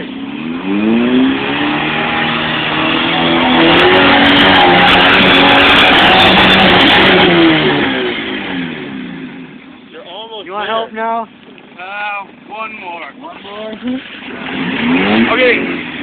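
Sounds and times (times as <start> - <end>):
engine revving hard: 0.0 - 9.4, 13.9 - 16.0.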